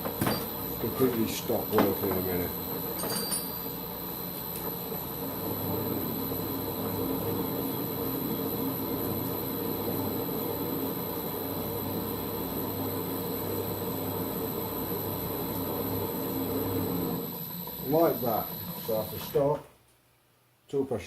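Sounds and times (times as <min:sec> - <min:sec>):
lathe running: 0:04.6 - 0:19.4.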